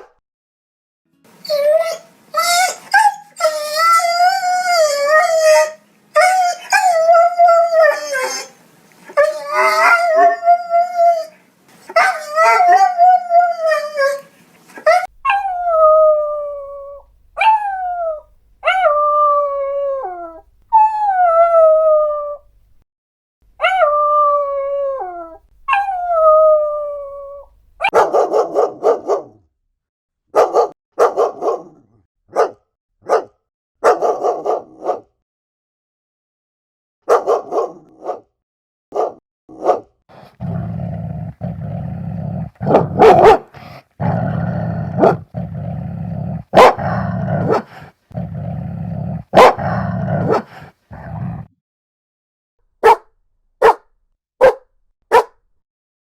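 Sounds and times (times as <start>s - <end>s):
dog howling: 1.4s - 8.6s, 9.2s - 11.4s, 12.0s - 14.3s, 14.9s - 22.4s, 23.6s - 27.5s
dog barking rapidly: 27.8s - 29.4s, 30.3s - 35.1s, 37.0s - 38.3s, 38.9s - 39.9s, 42.6s - 43.6s, 46.5s - 47.7s, 49.3s - 50.5s, 52.8s - 53.0s, 53.6s - 53.8s, 54.4s - 55.3s.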